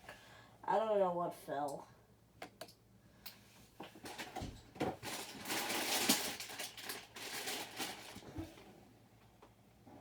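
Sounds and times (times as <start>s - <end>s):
plastic pieces clicking and rustling: 5.0s - 8.2s.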